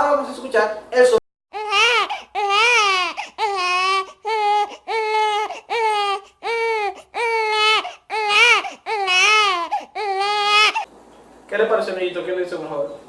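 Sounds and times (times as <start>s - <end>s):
infant crying: 1.5s - 10.9s.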